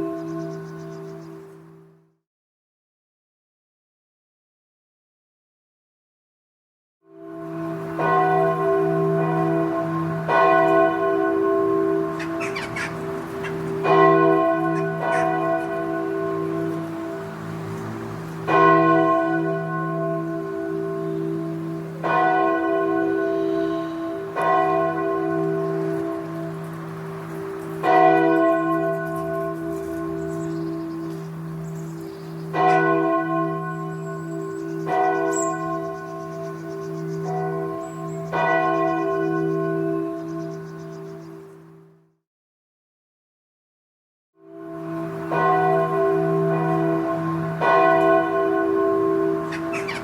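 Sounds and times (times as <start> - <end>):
large bell ringing: 7.2 - 40.8, 44.5 - 50.0.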